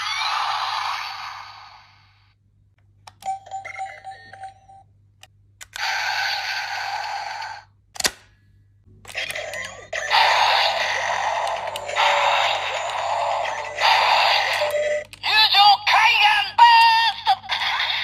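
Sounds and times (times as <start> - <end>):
loud electronic toy sound effect: 5.8 - 7.7, 9.1 - 18.0.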